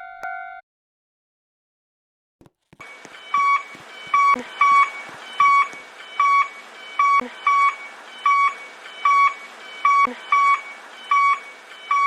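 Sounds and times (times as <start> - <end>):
background hiss: 2.8 - 12.0
level crossing alarm bell: 2.8 - 12.0.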